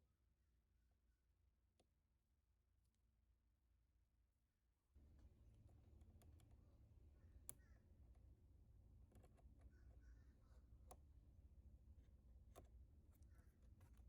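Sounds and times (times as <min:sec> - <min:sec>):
low steady hum: 0:04.9 - 0:14.0.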